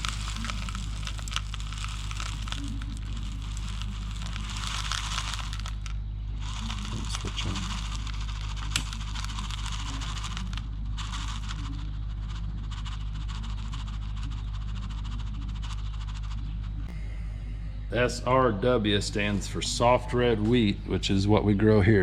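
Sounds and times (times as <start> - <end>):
grain pouring and rattling: 0.0 - 16.4
steady low hum: 0.0 - 22.0.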